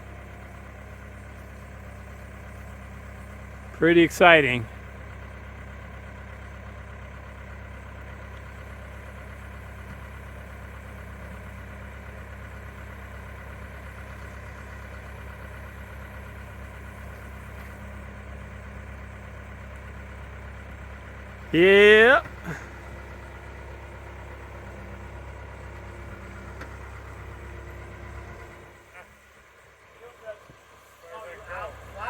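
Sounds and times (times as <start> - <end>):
truck engine idling: 0.0 - 32.0.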